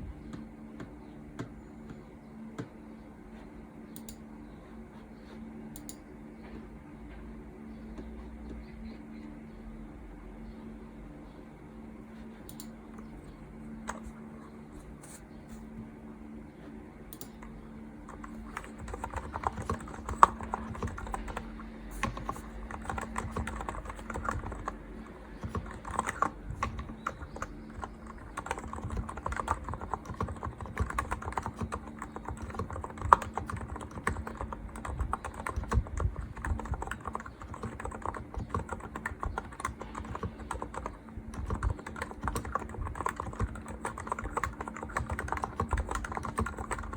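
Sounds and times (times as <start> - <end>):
keyboard typing: 12.4 - 15.7, 17.1 - 46.9.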